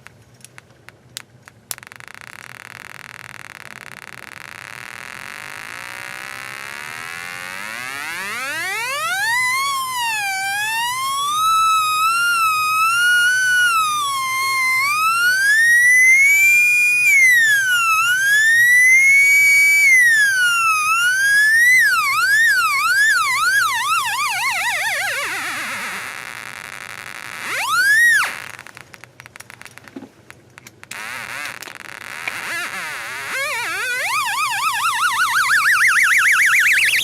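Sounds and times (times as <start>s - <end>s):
electronic siren-like tone: 2.9s - 28.9s, 30.9s - 37.0s.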